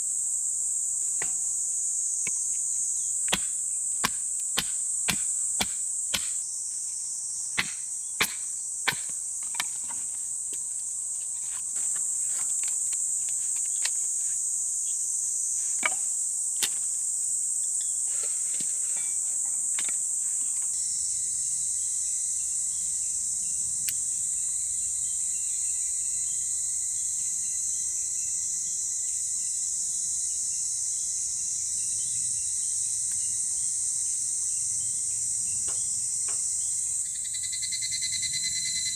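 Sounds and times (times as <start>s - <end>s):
high-pitched insect chorus: 0.0s - 38.9s
sharp chopping knocks: 3.2s - 6.4s, 7.6s - 9.8s.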